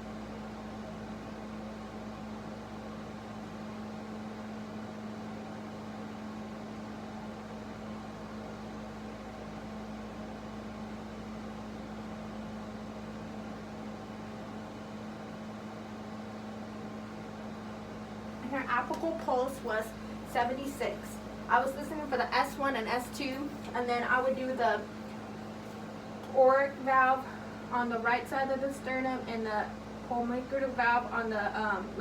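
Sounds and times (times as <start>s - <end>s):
low room hum with hiss: 0.0s - 32.0s.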